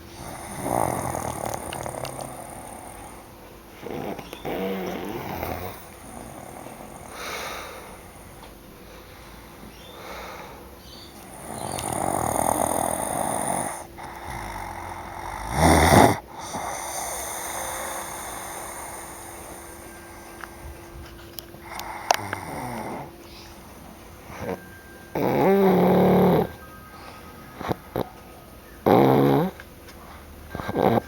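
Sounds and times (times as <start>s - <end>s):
people snoring: 0.0s - 8.5s, 9.4s - 26.6s, 28.8s - 29.6s, 30.5s - 31.0s.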